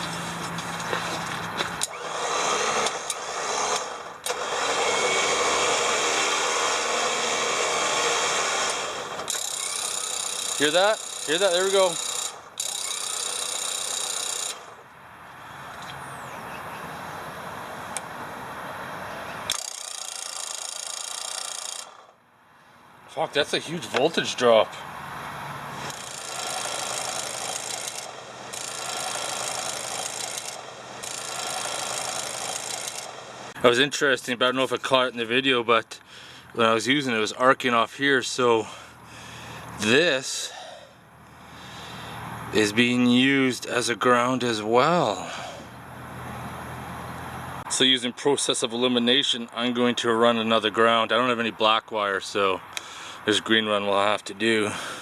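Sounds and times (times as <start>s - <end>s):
electric winch motor running: 0.0s - 14.9s, 19.5s - 22.2s, 25.8s - 33.6s.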